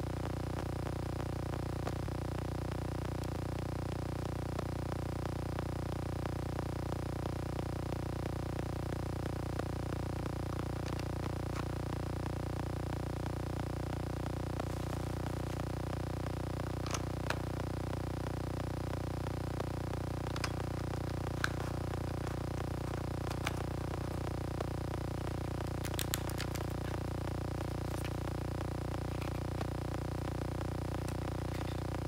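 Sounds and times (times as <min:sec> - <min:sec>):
steady electrical hum: 0:00.0 - 0:32.0
faint clicks and taps: 0:20.2 - 0:24.4, 0:25.2 - 0:27.0.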